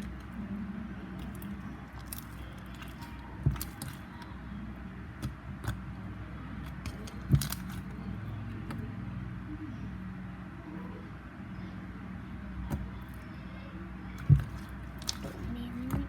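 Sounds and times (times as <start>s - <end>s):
steady low hum: 0.0s - 16.0s
knocks and clicks from handling containers: 14.2s - 16.0s.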